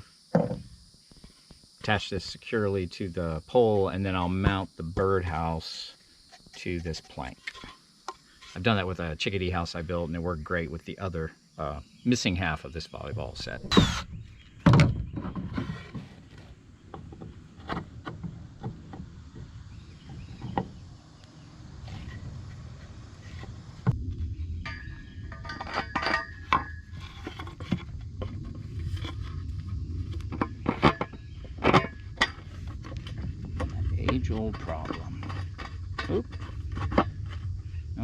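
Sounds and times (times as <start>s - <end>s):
wooden board and tools clattering: 0.3s - 0.7s, 13.5s - 20.8s, 24.6s - 29.4s, 30.1s - 37.6s
power drill whining: 13.6s - 14.1s.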